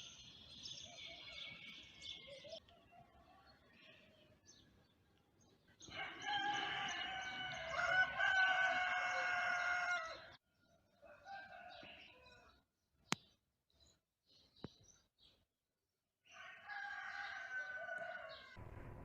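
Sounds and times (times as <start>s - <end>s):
rooster crowing: 5.9s - 10.3s, 11.0s - 12.4s, 16.3s - 18.6s.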